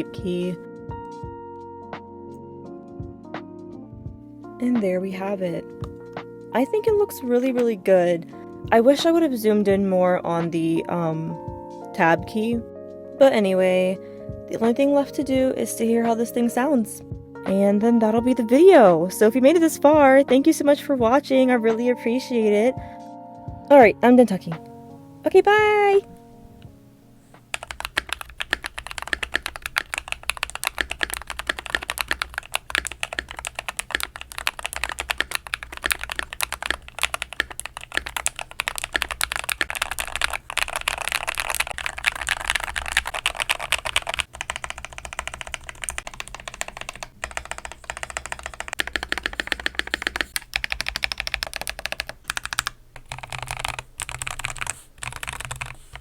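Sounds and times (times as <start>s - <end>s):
mechanical keyboard typing: 27.5s - 56.0s.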